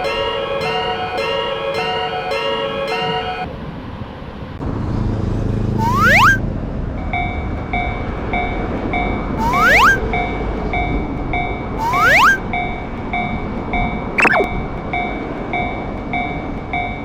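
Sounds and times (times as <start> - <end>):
railroad crossing bell ringing: 0.0 - 3.5
rising whistle-like sweeps: 5.8 - 6.4, 9.4 - 10.1, 11.8 - 12.4, 14.2 - 14.5.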